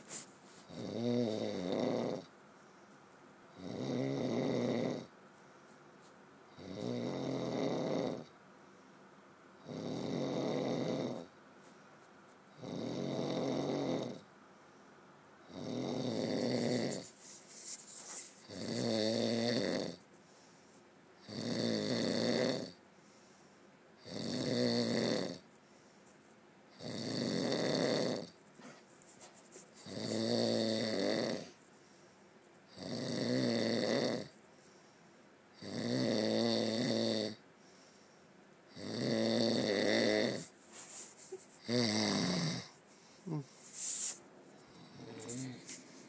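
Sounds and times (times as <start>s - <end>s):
loud snoring: 0.7s - 2.3s, 3.5s - 5.1s, 6.5s - 8.3s, 9.6s - 11.3s, 12.6s - 14.3s, 15.4s - 17.1s, 18.4s - 20.0s, 21.2s - 22.8s, 24.0s - 25.5s, 26.7s - 28.4s, 29.8s - 31.6s, 32.7s - 34.4s, 35.6s - 37.4s, 38.7s - 40.6s, 41.6s - 43.5s, 44.1s - 46.0s.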